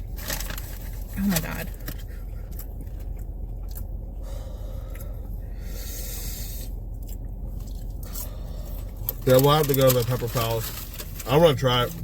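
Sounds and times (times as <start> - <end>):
low steady hum: 0.0 - 12.0
chewing and mouth sounds: 1.7 - 4.2, 6.6 - 9.2.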